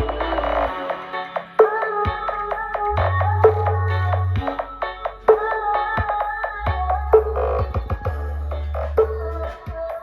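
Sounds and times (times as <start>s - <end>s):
synth melody: 0.0s - 9.5s
deep bass note: 2.1s - 9.5s.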